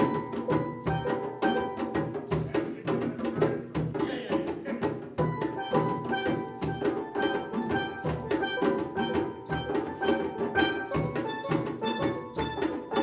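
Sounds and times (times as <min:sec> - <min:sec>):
steelpan notes: 0:00.0 - 0:02.6, 0:05.3 - 0:13.0
drum and hand percussion: 0:00.0 - 0:13.0.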